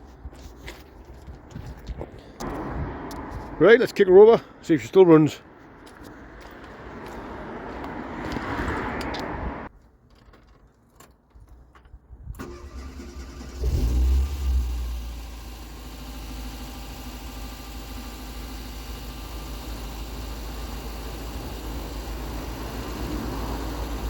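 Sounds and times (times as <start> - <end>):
car engine cranking and starting: 12.3 - 24.0.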